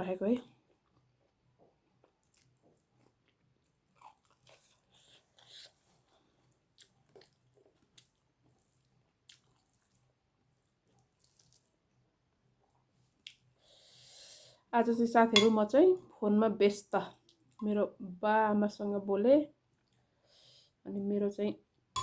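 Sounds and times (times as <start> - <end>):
chewing food: 0.4 - 13.6, 19.7 - 20.1.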